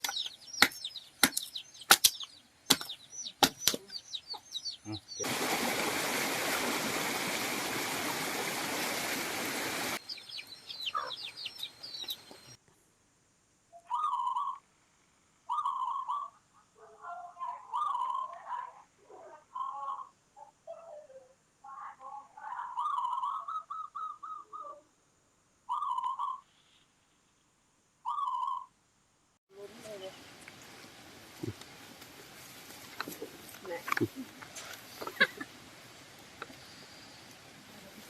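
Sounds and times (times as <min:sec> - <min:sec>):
small birds chirping: 0:00.0 - 0:05.3, 0:10.0 - 0:12.6, 0:13.8 - 0:14.6, 0:15.5 - 0:24.9, 0:25.7 - 0:26.8, 0:28.0 - 0:28.7, 0:29.6 - 0:31.8
lower bird calls: 0:10.1 - 0:12.6, 0:13.8 - 0:14.6, 0:15.5 - 0:16.7, 0:17.7 - 0:18.5, 0:22.7 - 0:24.9, 0:25.7 - 0:26.8, 0:28.0 - 0:28.7
steady even hiss: 0:29.6 - 0:38.0.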